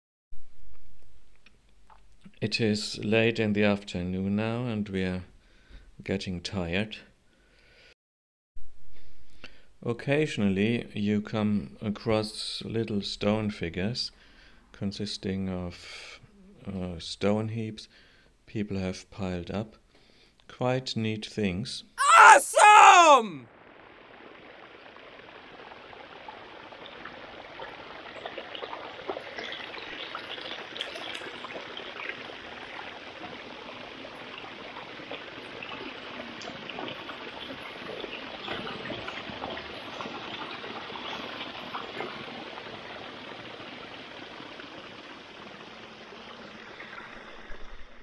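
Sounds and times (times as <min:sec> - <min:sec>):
stream trickling: 0:23.5 - 0:48.0.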